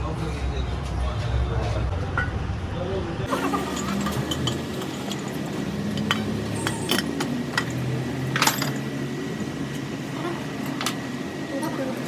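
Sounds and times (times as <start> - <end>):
metal tools clinking: 3.3 - 8.9.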